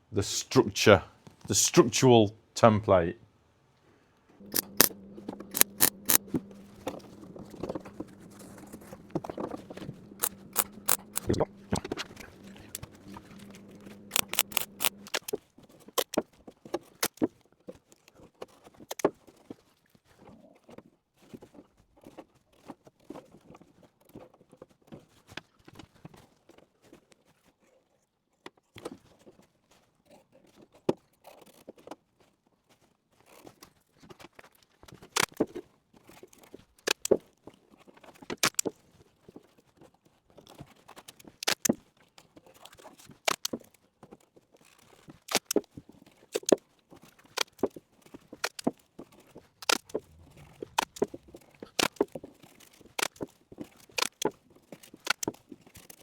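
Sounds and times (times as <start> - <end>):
masking tape tearing and crackling: 4.4 - 15.4, 16.0 - 16.2, 36.8 - 37.2, 38.3 - 38.7, 41.0 - 41.8, 43.1 - 43.7, 44.6 - 45.6, 46.3 - 46.6, 49.6 - 56.0.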